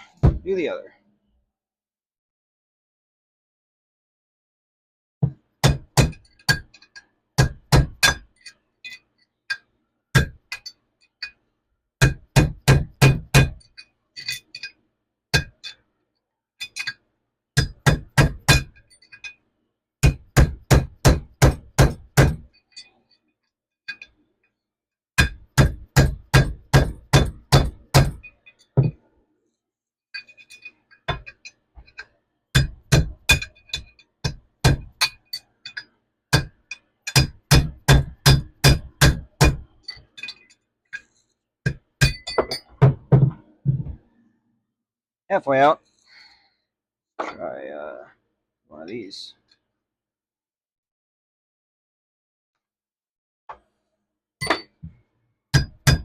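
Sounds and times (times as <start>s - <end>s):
hammer striking metal: 25.2s - 29.0s, 32.6s - 40.4s, 41.7s - 43.9s, 54.4s - 54.7s, 55.6s - 56.0s
metal ringing: 42.0s - 42.9s.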